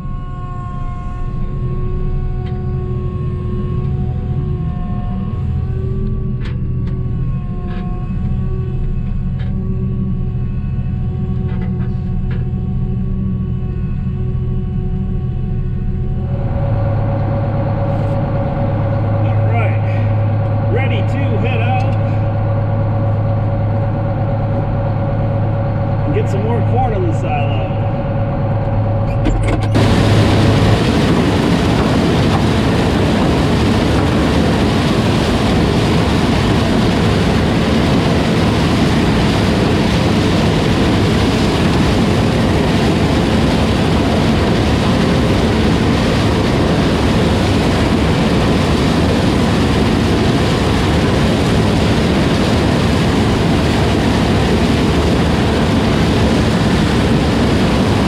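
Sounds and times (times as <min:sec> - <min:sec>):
farm vehicle engine and road noise: 0:06.4 - 0:38.4.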